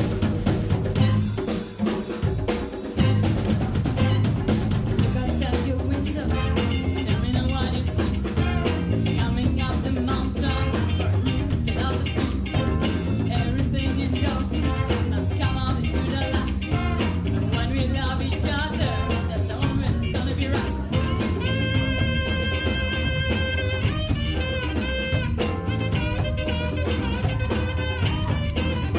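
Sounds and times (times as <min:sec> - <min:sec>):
big band horn section: 0:00.0 - 0:02.0, 0:02.9 - 0:05.2, 0:06.2 - 0:07.3, 0:08.2 - 0:09.3, 0:10.3 - 0:11.6, 0:12.2 - 0:13.4, 0:14.6 - 0:17.7, 0:18.7 - 0:20.0, 0:20.8 - 0:28.9
drum kit beat: 0:00.0 - 0:28.9.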